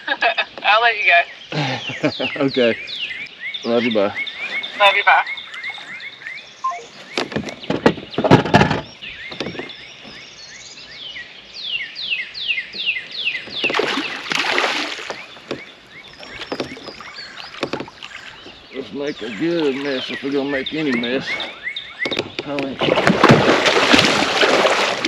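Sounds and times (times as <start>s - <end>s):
bird singing: 0.0s - 23.0s
water rushing and sloshing: 13.5s - 21.6s, 22.6s - 25.0s
gear knocking on plastic hull: 16.3s - 17.0s, 17.6s - 18.0s.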